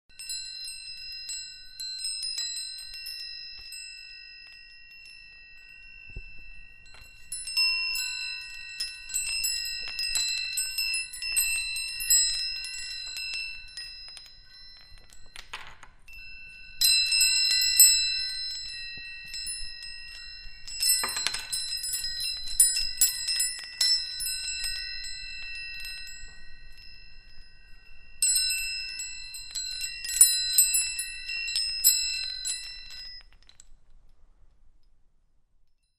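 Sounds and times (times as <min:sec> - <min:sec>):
metal chimes ringing: 0:00.1 - 0:33.7.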